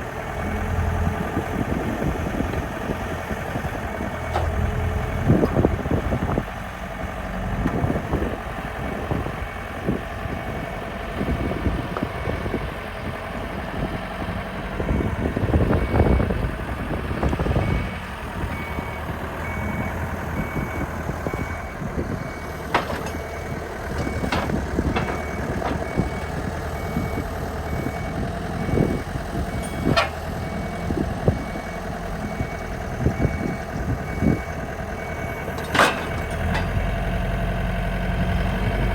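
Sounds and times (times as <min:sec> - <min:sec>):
forklift engine running: 0:00.0 - 0:38.9
reversing alarm beeping: 0:14.8 - 0:16.4, 0:17.6 - 0:37.1.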